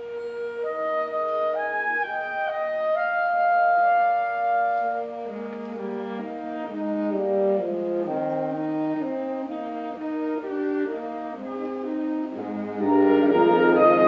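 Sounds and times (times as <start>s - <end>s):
band playing held chords: 10.8s - 14.0s.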